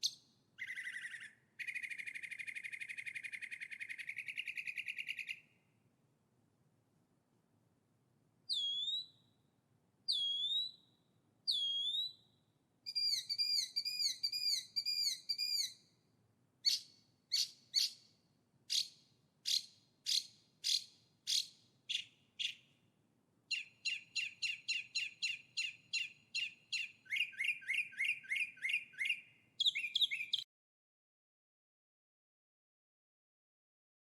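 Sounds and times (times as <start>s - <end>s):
songbird singing: 0.0s - 5.7s, 8.5s - 9.5s, 10.1s - 16.0s, 16.6s - 22.8s, 23.5s - 30.5s.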